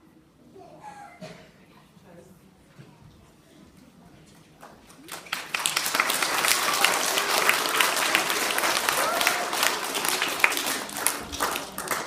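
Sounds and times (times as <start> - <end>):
audience applauding: 4.8 - 12.0.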